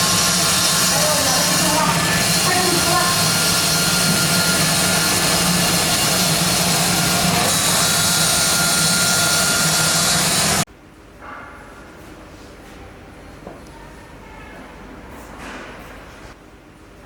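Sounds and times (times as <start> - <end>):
cutting machine running: 0.0 - 10.7.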